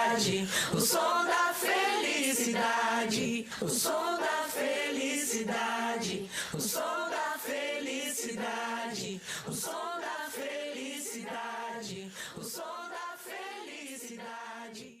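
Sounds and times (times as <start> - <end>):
group singing pop chorus: 0.0 - 15.0.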